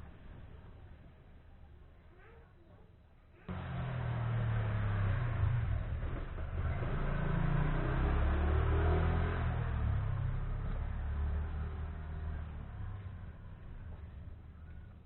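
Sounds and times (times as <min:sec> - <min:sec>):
car engine running: 0:03.5 - 0:08.2.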